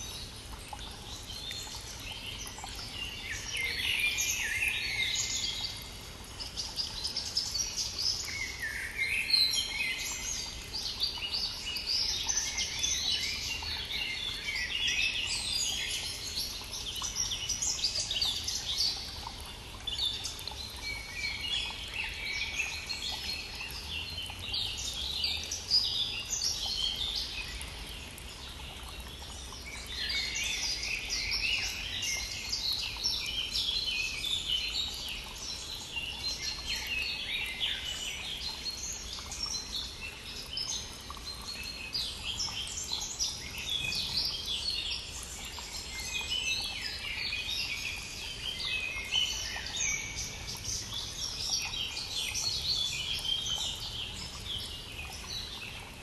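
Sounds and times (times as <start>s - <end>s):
songbirds singing: 0.0s - 56.0s.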